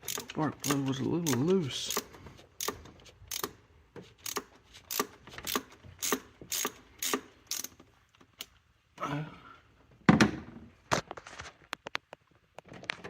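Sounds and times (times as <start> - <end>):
ratchet wrench clicking: 0.0 - 7.8.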